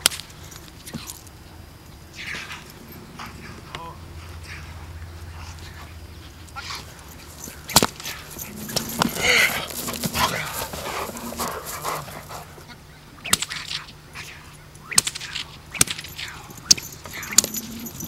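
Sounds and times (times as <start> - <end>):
dog vocalizing: 6.5 - 12.9, 16.1 - 18.0.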